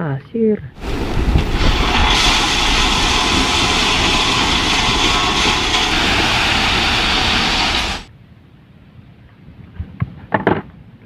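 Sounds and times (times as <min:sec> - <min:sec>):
vehicle engine with rushing hiss: 0:00.8 - 0:08.1.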